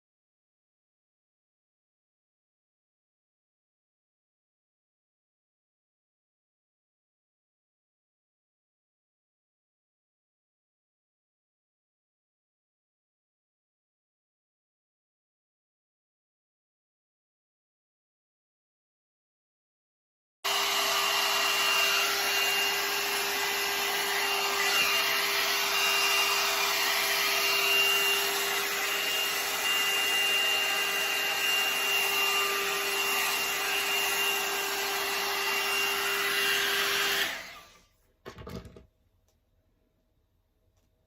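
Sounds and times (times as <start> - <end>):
hot air brush blowing with motor whine: 20.5 - 37.8.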